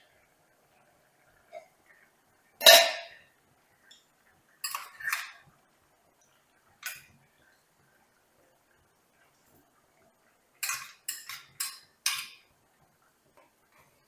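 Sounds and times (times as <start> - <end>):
utensils clinking on cookware: 2.6 - 3.2, 4.6 - 5.4, 10.6 - 12.4.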